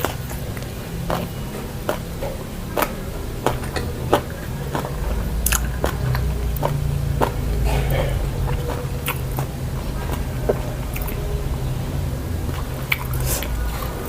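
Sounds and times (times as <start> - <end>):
chewing: 0.0 - 14.0
low steady hum: 0.0 - 14.0
wet mouth clicks and smacks: 2.7 - 11.2, 12.5 - 14.0.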